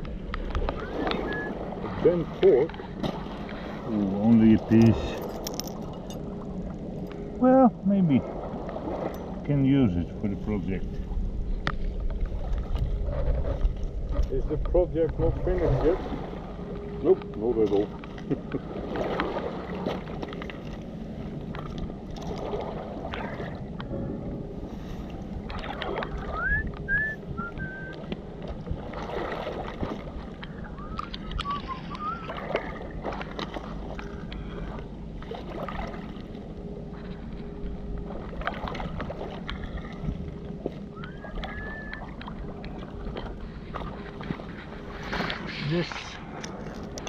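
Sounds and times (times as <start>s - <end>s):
low hum: 0.0s - 47.0s
water noise: 0.0s - 47.0s
wind: 0.0s - 47.0s.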